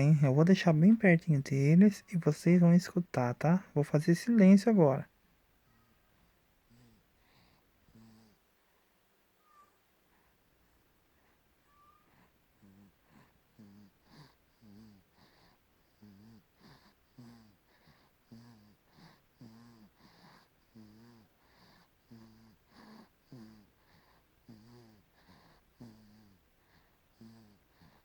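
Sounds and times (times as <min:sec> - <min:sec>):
baby snoring faintly: 0:00.0 - 0:05.1, 0:05.7 - 0:28.0.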